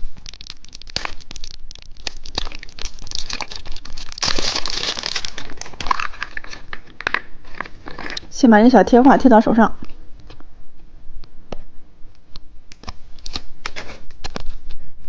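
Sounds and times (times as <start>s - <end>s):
plastic wrapping crinkling and tearing: 0.0s - 8.4s, 12.7s - 14.7s.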